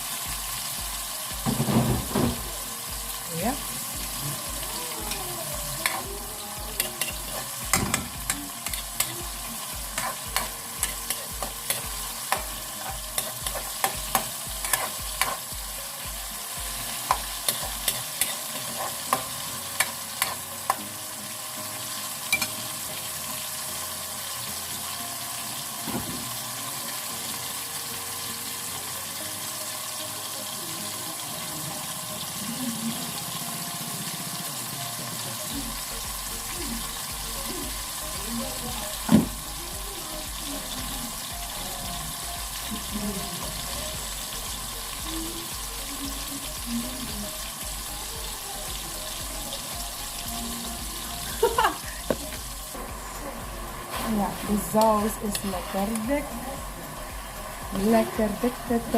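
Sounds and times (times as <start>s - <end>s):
vegetables sizzling in hot oil: 0.0s - 58.9s
spoon clicking against pan: 10.0s - 15.4s.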